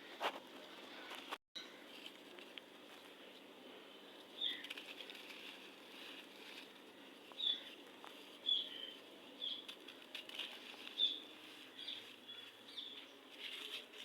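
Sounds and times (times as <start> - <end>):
soft continuous rustle: 0.1 - 14.0.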